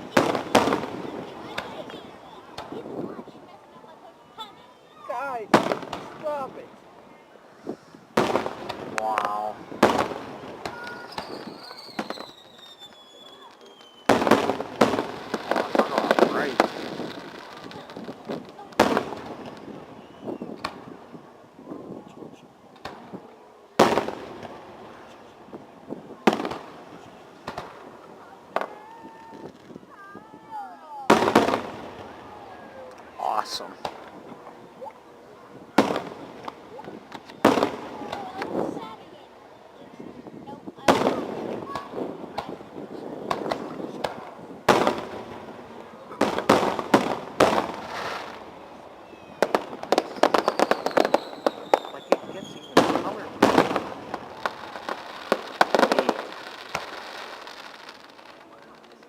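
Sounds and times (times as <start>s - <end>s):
firework shells booming: 0.0s - 3.0s, 5.5s - 6.5s, 8.1s - 21.1s, 23.8s - 29.8s, 31.1s - 32.3s, 32.9s - 34.6s, 35.5s - 38.8s, 40.8s - 58.0s
firework crackling pops: 0.0s - 6.8s, 7.5s - 39.3s, 40.0s - 59.0s
faint high whistle: 10.9s - 14.2s, 20.0s - 20.6s.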